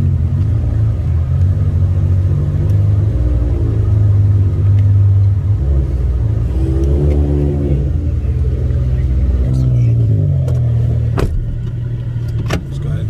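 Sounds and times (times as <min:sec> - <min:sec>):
deep car exhaust note: 0:02.6 - 0:13.0.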